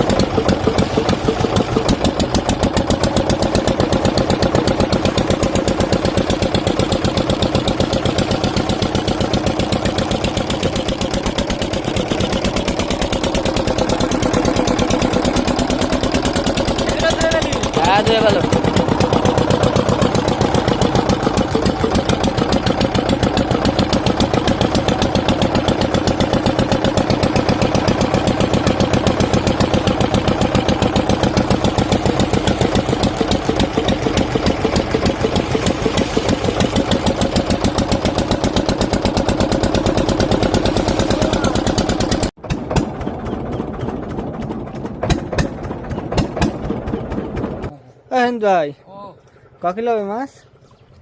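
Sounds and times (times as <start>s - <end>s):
boat engine running: 0.0s - 51.0s
sharp knocks: 42.4s - 47.7s.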